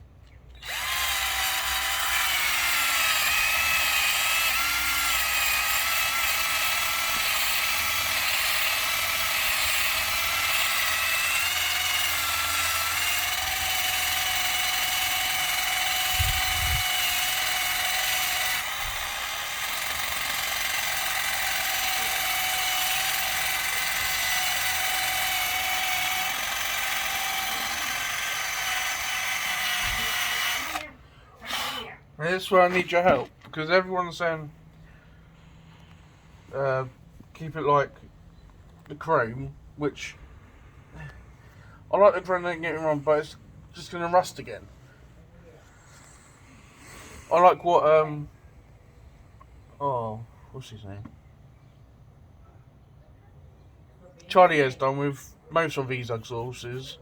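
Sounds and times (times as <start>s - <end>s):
drill wire wheel whining on metal: 0.5s - 34.9s.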